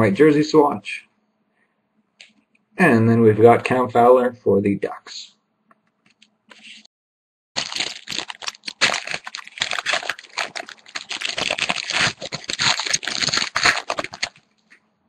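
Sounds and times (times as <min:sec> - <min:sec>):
card pack wrapper tearing and crinkling: 0:07.6 - 0:14.5.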